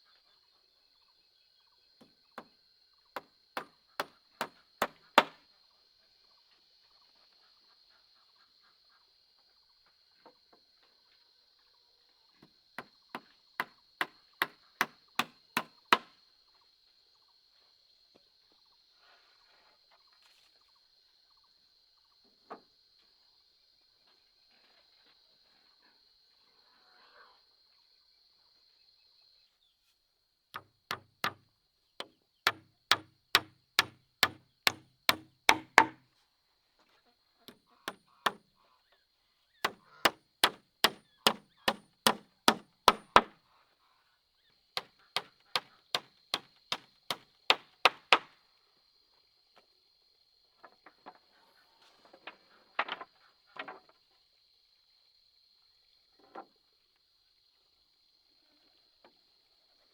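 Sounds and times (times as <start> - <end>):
tool striking wood: 3.6 - 5.4, 14.8 - 16.1, 30.6 - 31.4, 32.0 - 36.0, 37.9 - 38.4, 39.6 - 43.3, 45.2 - 48.3
light knocks: 32.5 - 36.0, 40.4 - 43.3.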